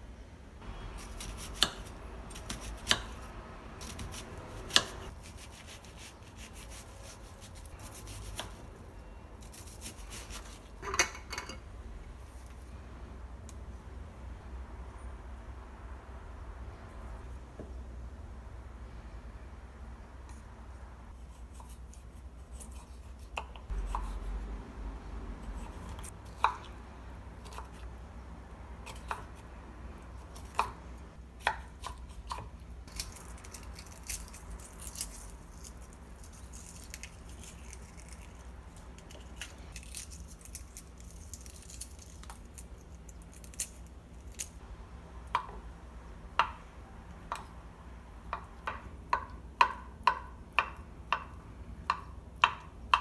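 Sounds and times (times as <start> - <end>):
kitchen utensils tapping: 10.8 - 11.6.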